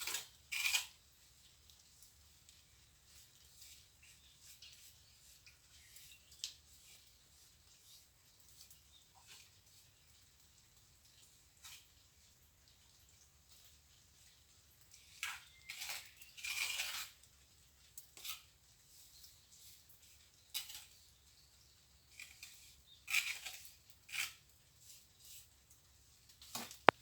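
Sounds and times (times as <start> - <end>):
trowel scraping cement mortar: 0.0 - 1.0, 15.0 - 17.3, 17.9 - 21.2, 22.1 - 25.6.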